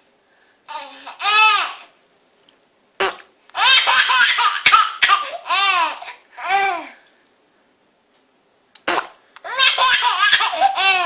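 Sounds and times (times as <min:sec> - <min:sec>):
baby laughing: 0:03.6 - 0:06.9, 0:09.4 - 0:11.0.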